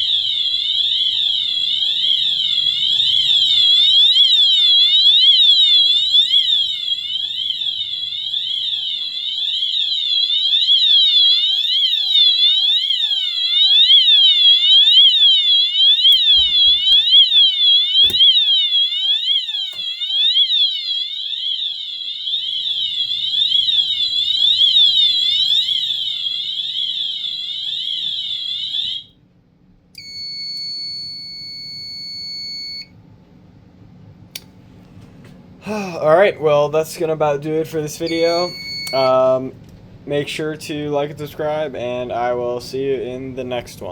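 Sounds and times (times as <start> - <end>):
fire alarm horns siren tone: 0.0 - 29.2, 30.0 - 33.0, 37.9 - 39.2
steady high beep: 38.1 - 39.0.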